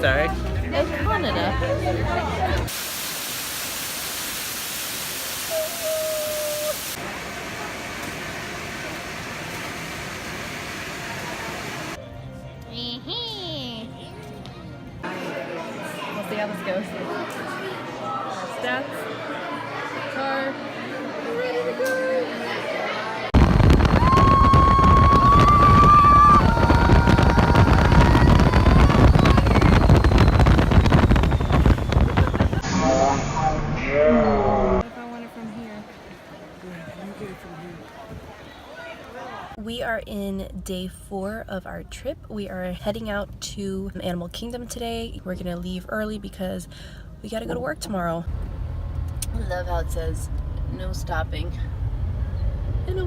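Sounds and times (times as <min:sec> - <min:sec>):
ride vehicle rumble: 0:23.4 - 0:33.2, 0:48.3 - 0:53.0
steady rushing noise: 0:23.4 - 0:33.9.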